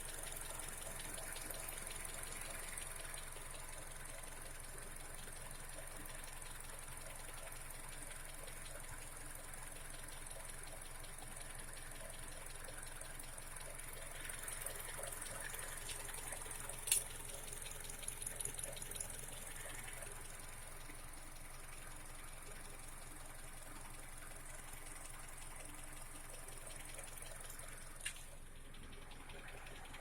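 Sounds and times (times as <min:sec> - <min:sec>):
engine idling with ticking: 0:00.0 - 0:30.0
sharp click: 0:16.8 - 0:17.1.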